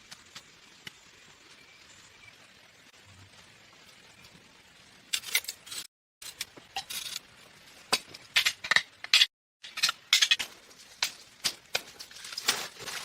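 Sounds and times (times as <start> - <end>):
hard objects clinking and knocking: 7.9 - 13.0.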